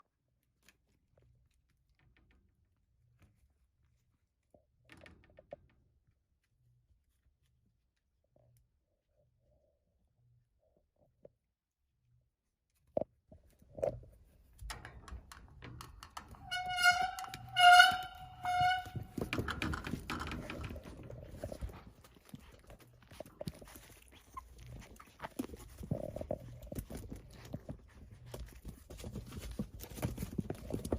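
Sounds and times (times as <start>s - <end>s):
clicks and light knocks: 13.0s - 30.9s.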